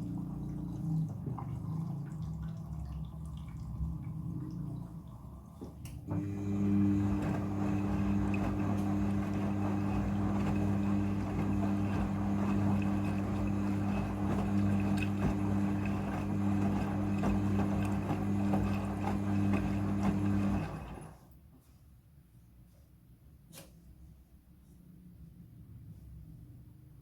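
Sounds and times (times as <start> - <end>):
water rushing through washing machine: 0.0 - 21.3
electric pump hum: 6.0 - 21.2.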